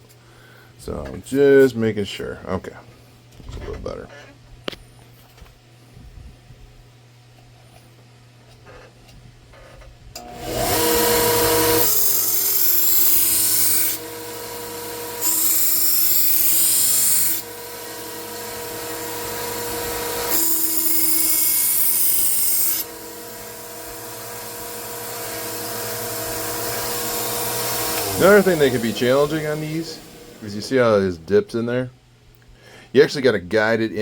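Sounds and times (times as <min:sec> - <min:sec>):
belt sander humming: 0:10.2 - 0:31.3
knife grinding on sanding belt: 0:10.5 - 0:30.6.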